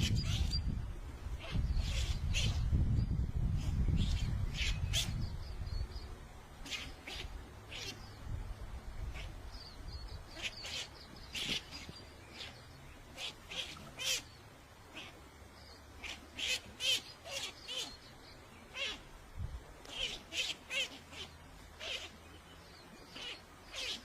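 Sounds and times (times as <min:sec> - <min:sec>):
high-pitched animal calls: 0:06.6 - 0:08.0, 0:13.2 - 0:14.3, 0:16.0 - 0:18.0, 0:18.7 - 0:19.1, 0:19.9 - 0:22.2, 0:23.1 - 0:24.0.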